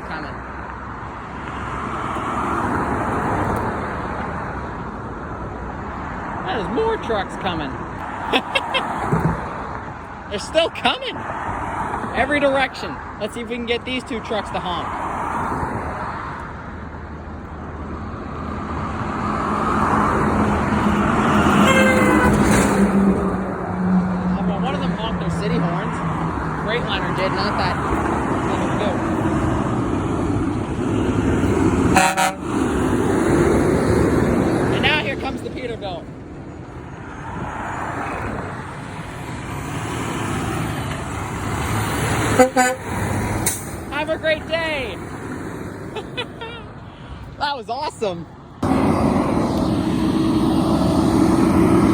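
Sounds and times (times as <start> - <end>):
truck engine and tyre noise: 0.0 - 51.9
trucks passing: 0.0 - 51.9
truck horn: 21.3 - 24.0, 31.8 - 32.8, 42.2 - 43.6.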